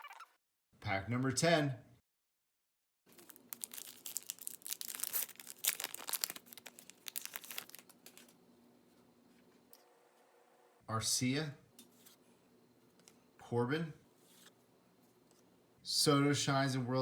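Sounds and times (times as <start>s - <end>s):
foil wrapper tearing and crinkling: 3.1s - 8.4s.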